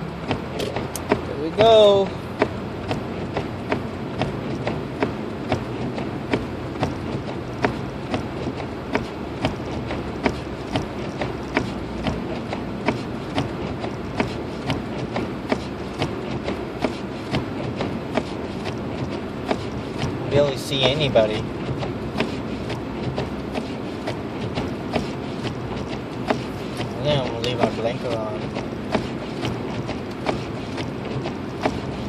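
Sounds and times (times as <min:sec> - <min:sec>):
car cabin hum: 0:00.0 - 0:32.0.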